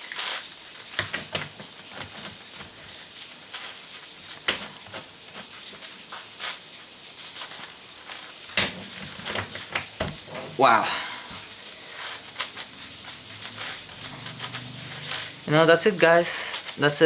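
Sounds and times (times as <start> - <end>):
plastic puzzle cube clicking: 0.1 - 2.8, 3.5 - 6.6, 7.3 - 10.3, 12.0 - 15.4, 16.5 - 17.0.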